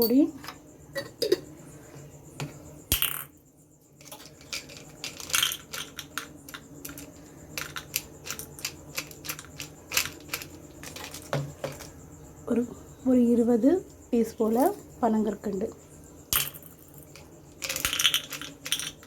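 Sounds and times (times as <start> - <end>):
candy pieces clinking into vessel: 16.4 - 19.0.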